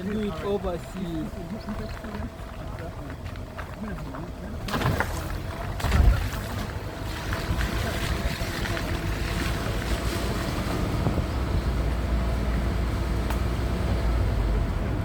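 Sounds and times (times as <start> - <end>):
motor vehicle rumble: 0.0 - 15.0
wind noise on microphone: 5.8 - 12.0.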